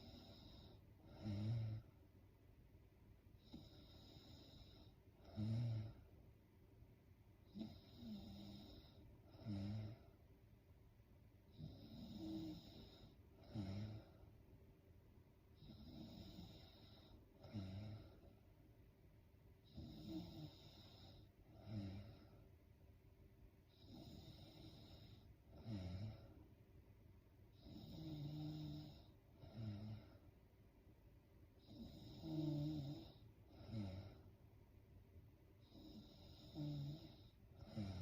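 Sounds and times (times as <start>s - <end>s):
woman snoring: 0.0s - 1.9s, 3.4s - 6.0s, 7.5s - 10.1s, 11.5s - 14.2s, 15.6s - 18.3s, 19.7s - 22.4s, 23.7s - 26.4s, 27.5s - 30.2s, 31.6s - 34.3s, 35.6s - 38.0s.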